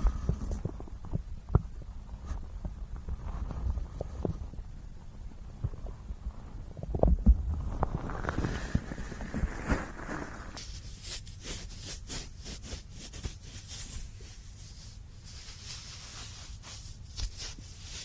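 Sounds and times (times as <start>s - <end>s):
rubbing on microphone: 0.0s - 4.7s, 7.0s - 18.0s
stomach gurgling: 5.6s - 10.6s.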